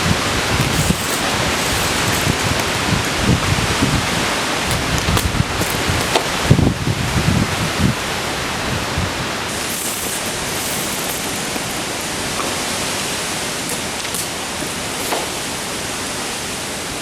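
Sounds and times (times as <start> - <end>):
strong wind rushing: 0.0 - 9.6
wind buffeting microphone: 0.0 - 9.6.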